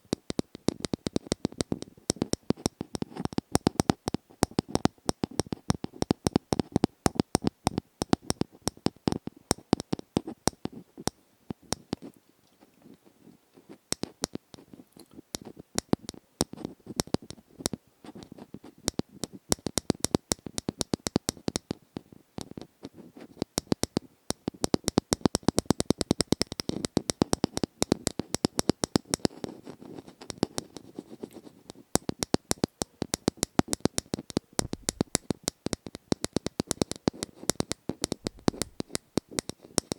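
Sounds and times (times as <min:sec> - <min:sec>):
crisp clicks and taps: 0:00.0 - 0:12.6, 0:13.9 - 0:39.9
scratchy rubbing: 0:24.8 - 0:39.9.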